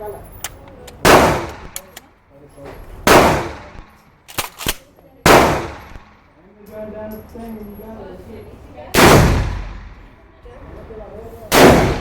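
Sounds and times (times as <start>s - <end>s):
shotgun blasts: 1.0s - 1.8s, 3.0s - 6.1s, 8.9s - 10.0s, 11.5s - 12.0s.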